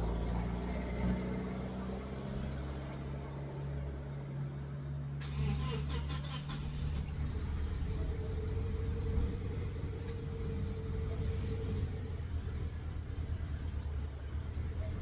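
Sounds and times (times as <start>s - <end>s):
vehicle engine running: 4.7s - 15.0s.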